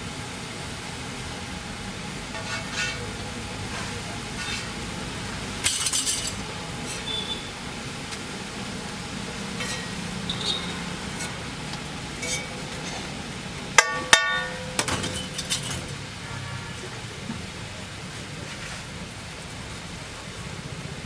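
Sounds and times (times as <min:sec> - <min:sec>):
steady background hiss: 0:00.0 - 0:21.0
metal cooking utensils clinking: 0:02.3 - 0:04.8, 0:05.6 - 0:07.2, 0:09.6 - 0:11.5, 0:12.1 - 0:13.2, 0:13.8 - 0:16.0
sharp ringing metal clangs: 0:13.8 - 0:15.7.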